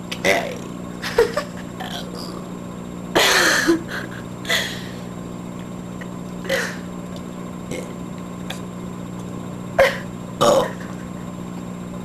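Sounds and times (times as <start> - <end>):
woman burping: 9.8 - 10.9.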